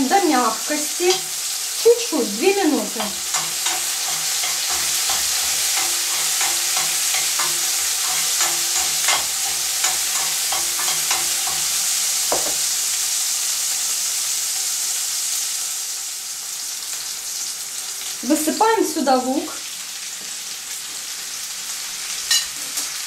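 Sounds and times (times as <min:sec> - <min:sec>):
pepper sizzling in oil: 0:00.0 - 0:23.0
utensil scraping and tapping pan: 0:03.0 - 0:12.6.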